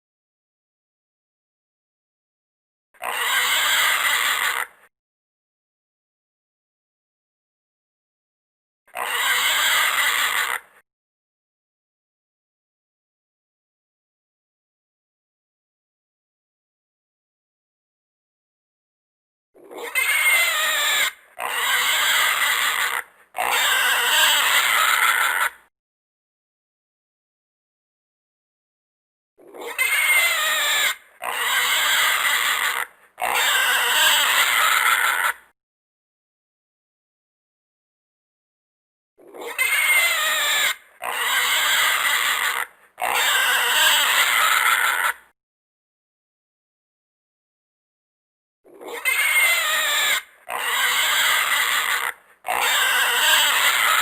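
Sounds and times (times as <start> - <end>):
animal squealing: 3.0 - 4.8, 8.9 - 10.8, 19.6 - 25.7, 29.4 - 35.5, 39.2 - 45.3, 48.7 - 54.0.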